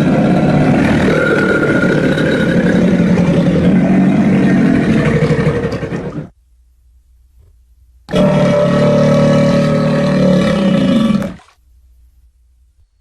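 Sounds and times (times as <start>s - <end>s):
low rumbling creature call: 0.0s - 6.3s, 8.1s - 11.5s.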